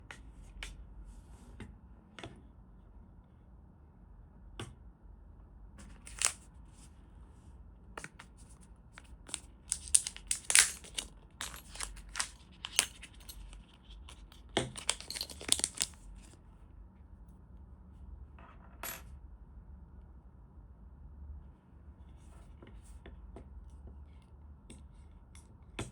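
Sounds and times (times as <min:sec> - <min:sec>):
sharp clicks of parts: 0:06.1 - 0:06.4, 0:09.3 - 0:16.0
crinkling rustles: 0:09.0 - 0:16.4.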